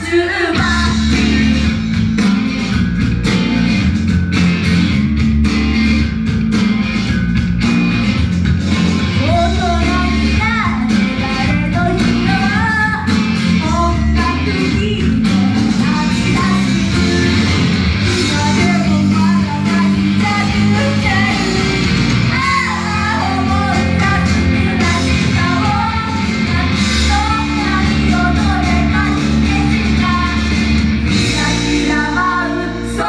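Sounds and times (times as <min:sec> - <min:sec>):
female voices singing: 0:00.0 - 0:01.5, 0:09.2 - 0:33.0
loud rock music with electric guitar: 0:00.0 - 0:33.0.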